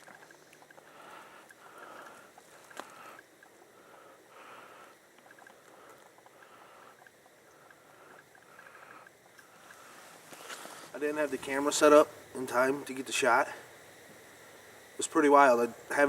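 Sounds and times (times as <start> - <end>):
faint rustling: 0.0 - 11.8.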